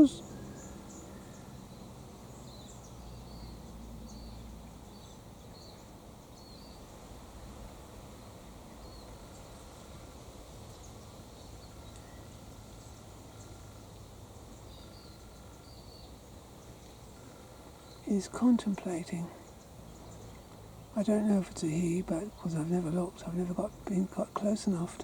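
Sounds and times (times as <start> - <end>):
small birds chirping: 0.0 - 7.7, 8.5 - 25.0
low steady rumble: 16.3 - 25.0.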